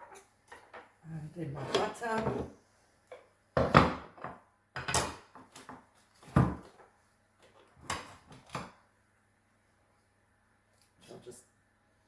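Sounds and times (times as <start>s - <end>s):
kitchen utensils knocking and clattering: 3.6s - 6.6s.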